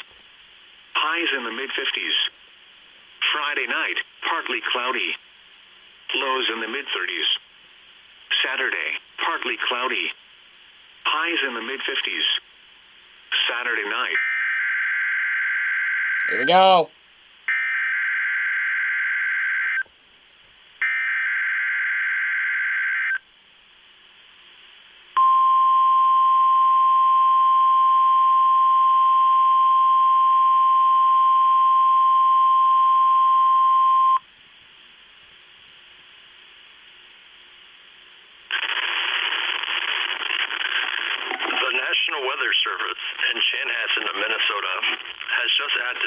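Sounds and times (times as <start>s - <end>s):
announcer speaking: 16.3s - 16.9s.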